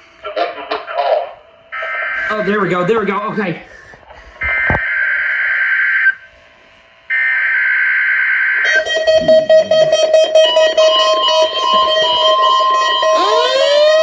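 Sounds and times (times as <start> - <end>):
harsh data screeches: 8.6 - 14.0
weather radio alarm tones and beeping: 8.6 - 14.0.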